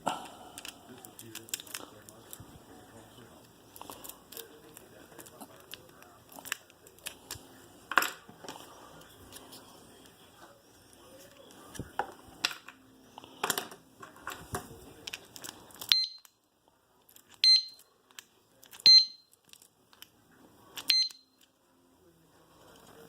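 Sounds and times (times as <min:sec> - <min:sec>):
short high beeps: 0:17.4 - 0:17.8, 0:18.9 - 0:19.3, 0:20.9 - 0:21.4.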